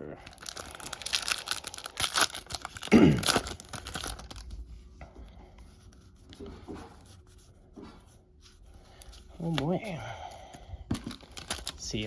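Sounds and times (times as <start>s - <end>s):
foil wrapper crinkling and tearing: 0.2s - 4.6s, 11.0s - 12.0s.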